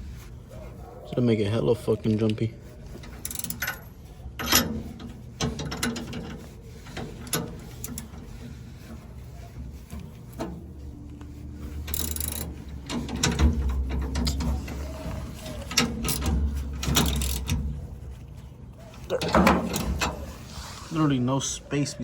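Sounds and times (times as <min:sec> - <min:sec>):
socket ratchet clicking: 0:11.8 - 0:14.5.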